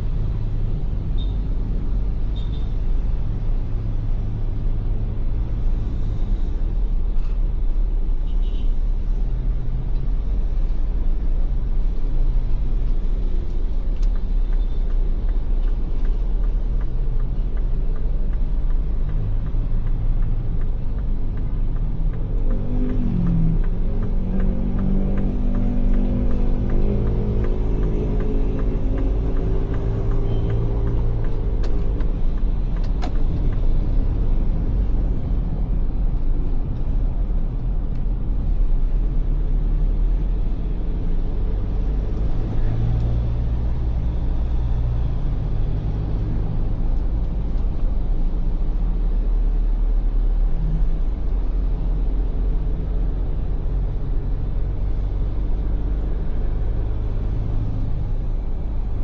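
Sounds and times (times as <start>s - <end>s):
engine and road rumble: 0.0s - 59.0s.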